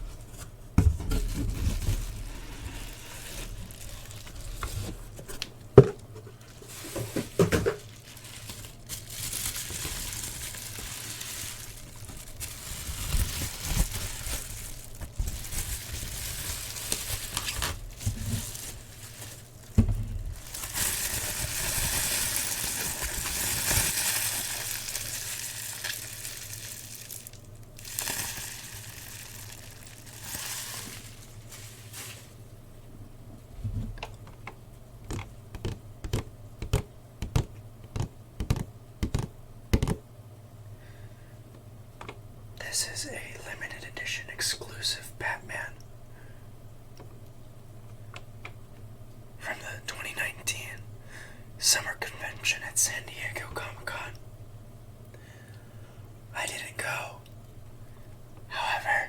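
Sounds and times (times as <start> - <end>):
packaging rustling and crinkling: 0.0 - 32.4
knocks and taps on cardboard box: 35.1 - 40.0.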